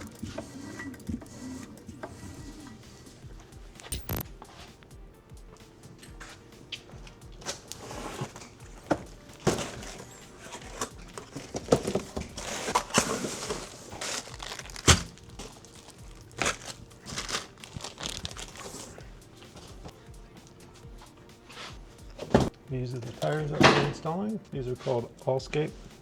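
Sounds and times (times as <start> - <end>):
packaging crinkling and tearing: 3.8 - 4.3, 9.5 - 19.0.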